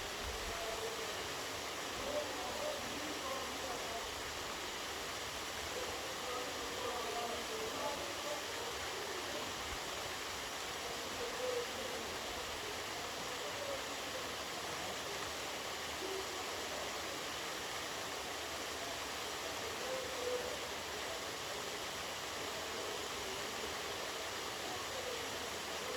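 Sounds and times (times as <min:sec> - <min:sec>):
waterfall rushing: 0:00.0 - 0:25.9.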